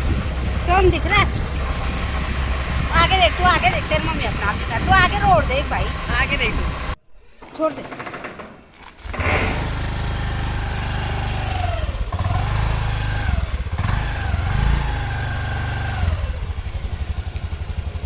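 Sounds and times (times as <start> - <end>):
heavy low rumble: 0.0 - 7.0
vehicle engine whining: 0.0 - 7.0, 8.9 - 18.0.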